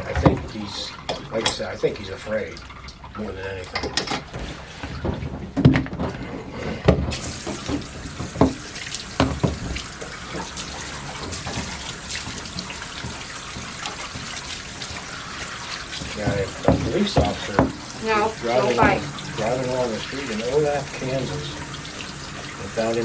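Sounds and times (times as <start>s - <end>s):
water running into a tub: 0.0s - 23.0s
knocks and thumps: 3.7s - 10.5s, 16.0s - 17.9s.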